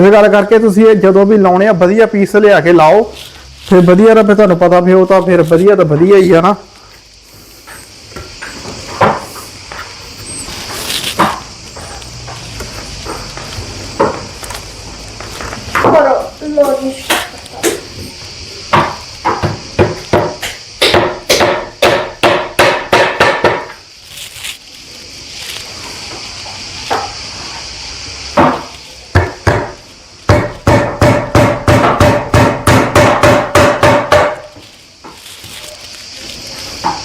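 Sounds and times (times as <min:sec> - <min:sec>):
hammer striking nails into wood: 0:18.7 - 0:23.8, 0:28.4 - 0:34.6.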